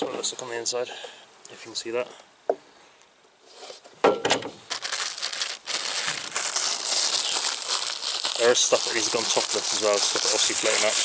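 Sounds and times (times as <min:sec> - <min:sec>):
crinkling crackling rustle: 0:04.6 - 0:11.0.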